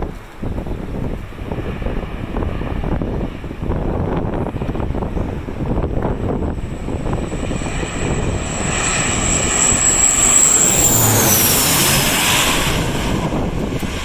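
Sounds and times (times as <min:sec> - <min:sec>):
airliner passing overhead: 0:00.0 - 0:14.0
high thin engine whine: 0:04.4 - 0:14.0.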